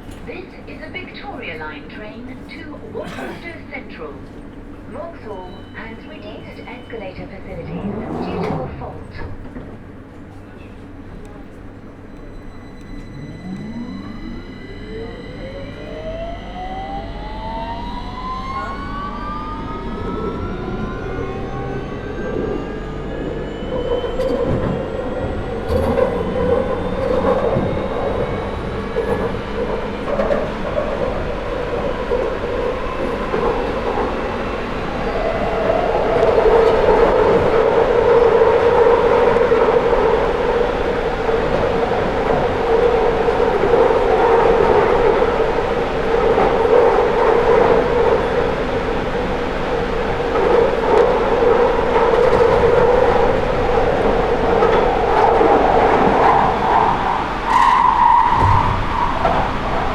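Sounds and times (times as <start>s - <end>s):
train wheels rumbling on rails: 0.0s - 59.9s
train traction motor whine: 4.0s - 59.9s.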